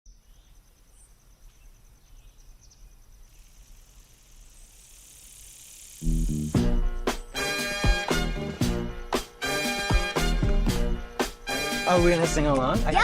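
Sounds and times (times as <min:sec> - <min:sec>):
insect chirring: 0:00.1 - 0:08.1, 0:11.0 - 0:12.0
high hiss: 0:03.2 - 0:12.4
loud funk music: 0:06.0 - 0:13.0.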